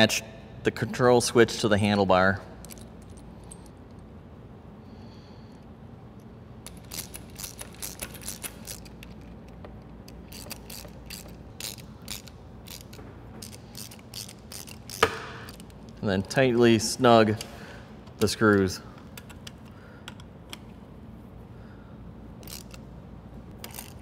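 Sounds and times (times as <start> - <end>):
ratcheting hand tool clicking: 6.7 - 16.0, 22.4 - 22.8, 23.6 - 24.0.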